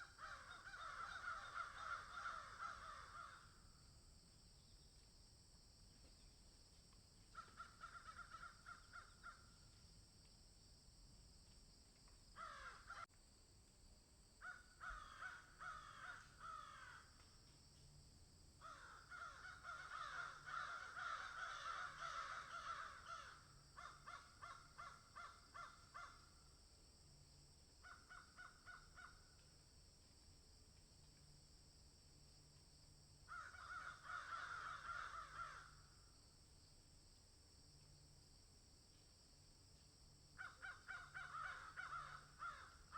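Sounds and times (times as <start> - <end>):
crows cawing: 0.0 - 3.6, 7.3 - 9.6, 12.4 - 13.0, 14.4 - 17.2, 18.6 - 26.3, 27.8 - 29.3, 33.3 - 35.9, 40.4 - 42.9.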